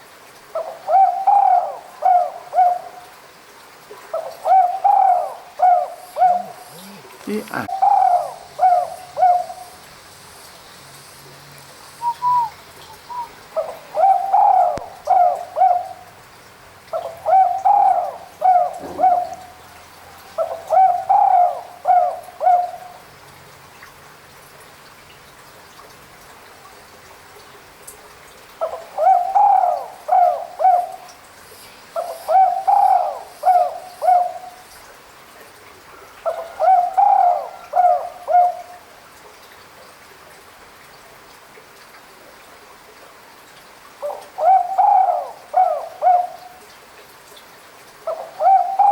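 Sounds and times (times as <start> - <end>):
dove cooing: 0.6 - 3.0, 4.1 - 9.8, 12.0 - 16.1, 16.9 - 23.0, 28.6 - 31.1, 32.0 - 34.6, 36.2 - 38.7, 44.0 - 46.6, 48.1 - 48.9.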